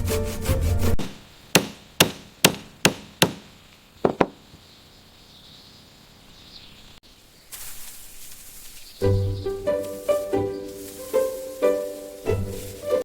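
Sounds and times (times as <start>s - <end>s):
low steady hiss: 1.0s - 13.0s
sharp knocks on wood: 1.6s - 4.4s.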